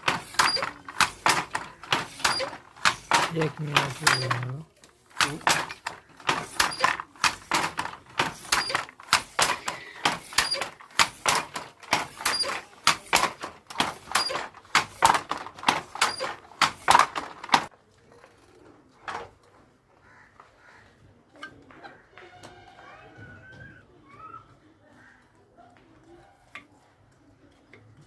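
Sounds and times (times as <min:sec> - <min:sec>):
handloom wooden clacks: 0:00.0 - 0:17.7.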